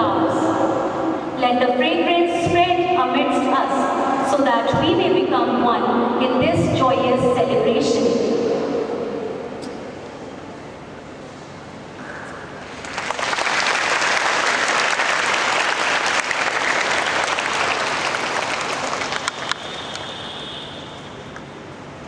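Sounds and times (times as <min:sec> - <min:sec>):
audience applauding: 0:12.6 - 0:21.2.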